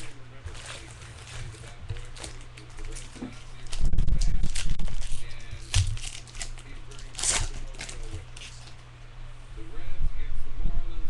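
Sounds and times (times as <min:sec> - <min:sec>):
foil wrapper ripping: 0:00.0 - 0:08.8
foil wrappers crinkling: 0:00.0 - 0:08.9.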